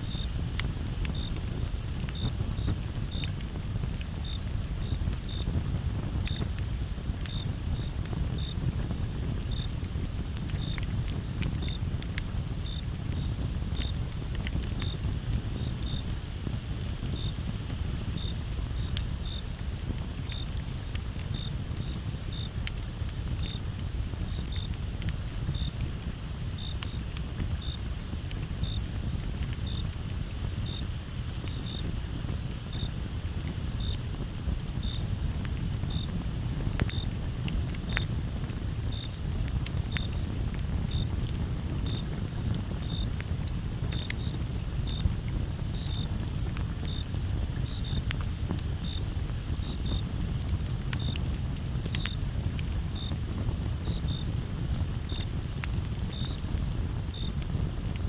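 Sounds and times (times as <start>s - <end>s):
campfire crackling and popping: 0.0s - 58.0s
crickets chirping: 0.0s - 58.0s.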